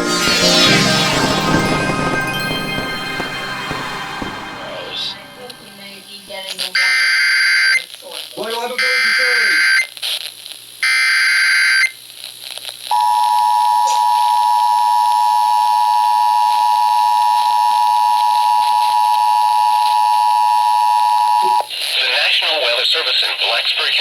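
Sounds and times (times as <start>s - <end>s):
piercing dual tone attention signal: 0.0s - 7.8s, 8.8s - 9.9s, 13.0s - 21.7s
rapid two-pitch data tones: 0.0s - 7.8s, 8.7s - 9.9s.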